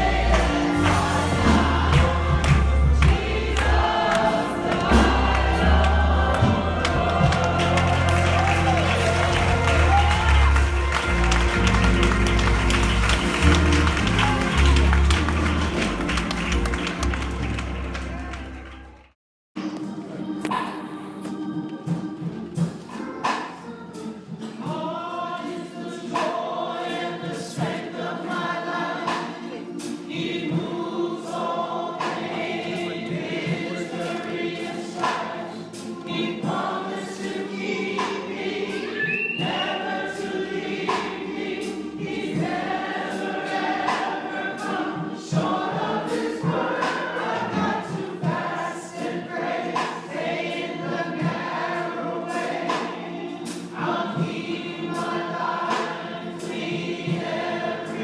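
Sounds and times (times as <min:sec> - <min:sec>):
sharp regular beats: 0:00.0 - 0:17.9
congregation singing gospel song: 0:00.0 - 0:18.8, 0:19.6 - 0:58.0.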